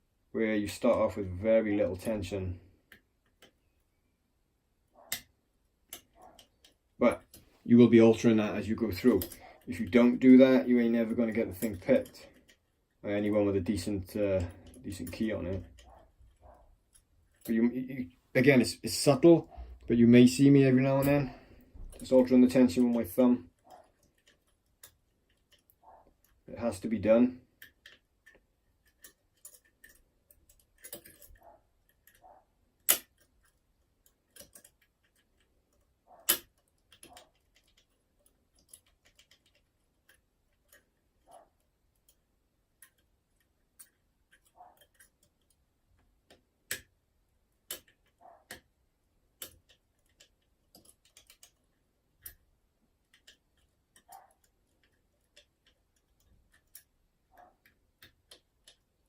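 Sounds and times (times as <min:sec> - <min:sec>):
metal clicks of lock picking: 0:27.6 - 0:41.4, 0:42.8 - 0:45.6, 0:47.6 - 0:48.7, 0:49.4 - 0:52.4, 0:53.1 - 0:58.9.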